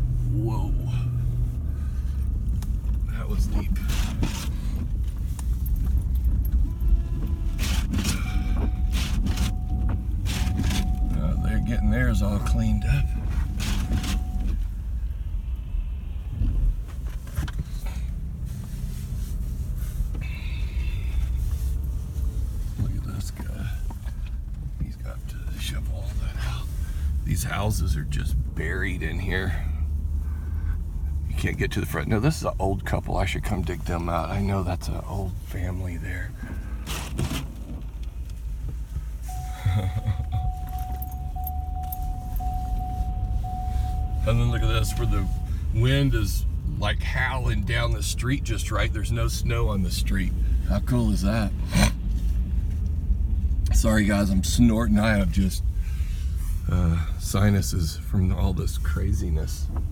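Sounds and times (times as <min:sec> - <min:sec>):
engine and road rumble: 0:00.0 - 0:59.9
steady high tone: 0:08.3 - 0:14.5, 0:39.3 - 0:45.6.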